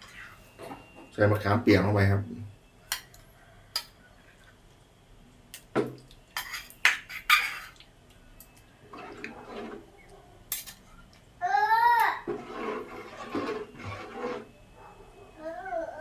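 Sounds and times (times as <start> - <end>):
utensils clinking against pot: 6.4 - 7.8, 10.5 - 10.9
short scrape: 12.3 - 14.5.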